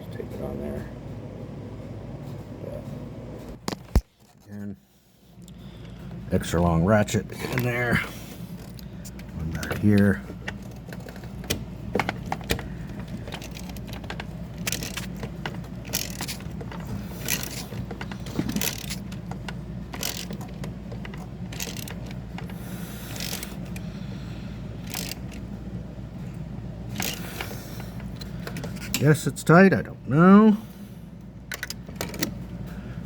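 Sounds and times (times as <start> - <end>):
ratchet clicking: 8.6 - 23.9, 24.8 - 25.5, 27.0 - 28.9.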